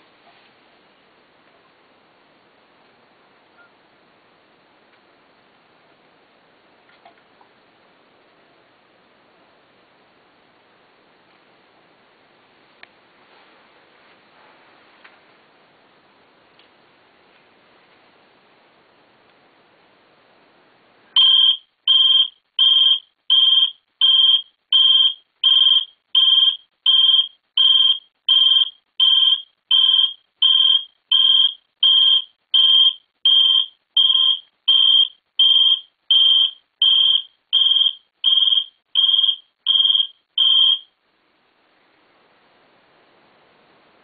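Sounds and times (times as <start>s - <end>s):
electronic alarm beeping: 21.2s - 40.9s.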